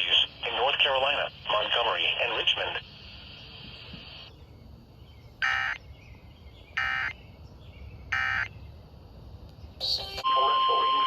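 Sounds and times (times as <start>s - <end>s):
faint radio hiss: 0.0s - 4.9s.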